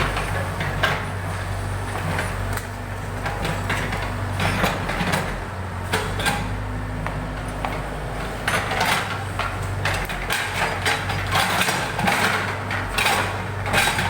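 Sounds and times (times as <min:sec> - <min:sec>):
backhoe engine running: 0:00.0 - 0:14.0
machine knocks clanks and scrapes: 0:07.6 - 0:14.0.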